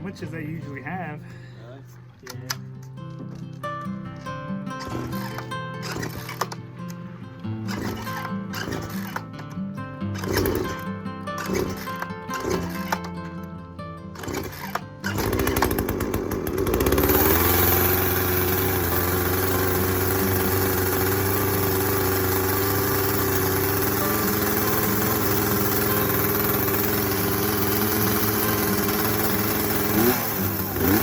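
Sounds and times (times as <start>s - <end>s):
chainsaw engine running: 4.8s - 7.0s, 7.6s - 9.5s, 10.1s - 13.2s, 14.1s - 31.0s.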